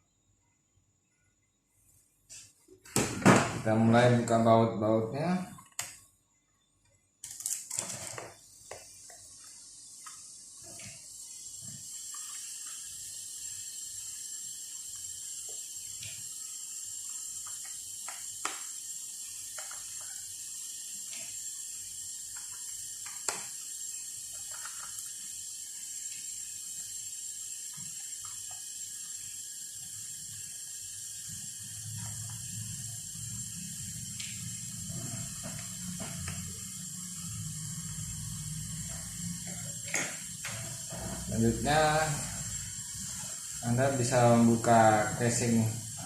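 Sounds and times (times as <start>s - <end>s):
steady high hiss: 1.1s - 6.6s, 7.2s - 46.0s.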